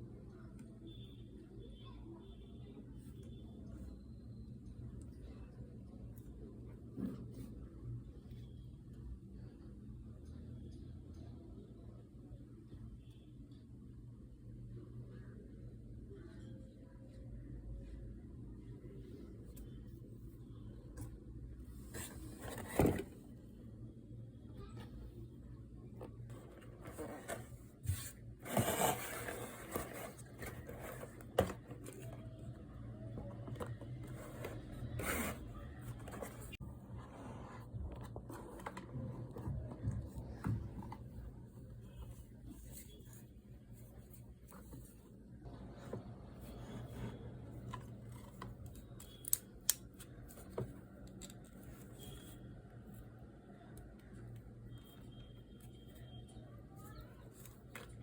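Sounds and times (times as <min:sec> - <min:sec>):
objects rubbing and scraping: 0:26.3 - 0:32.1.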